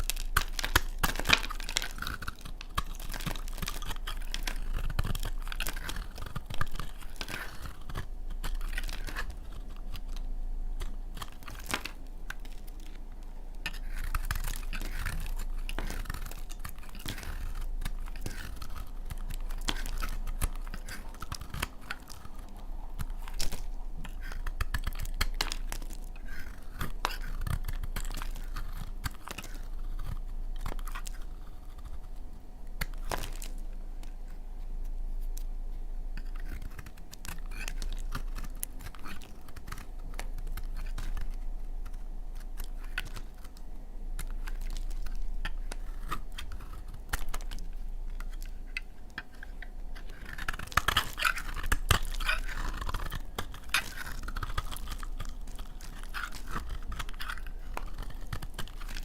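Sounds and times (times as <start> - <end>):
knife cutting dry soap: 48.2 - 59.0.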